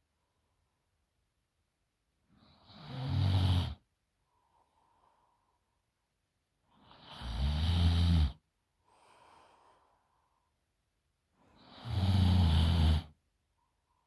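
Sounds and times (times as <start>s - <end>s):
woman snoring: 2.4s - 3.8s, 6.8s - 8.4s, 11.6s - 13.2s
soft breath out: 8.8s - 10.6s.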